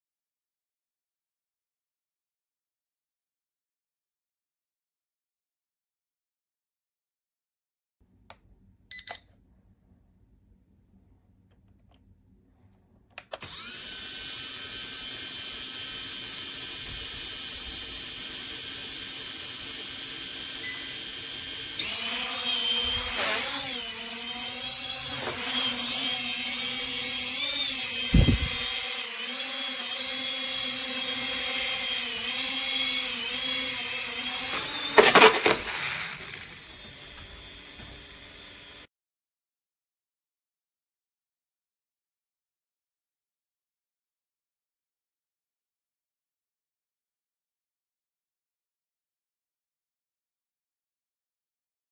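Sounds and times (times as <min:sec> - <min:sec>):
toy drone motors whirring: 0:13.3 - 0:38.9.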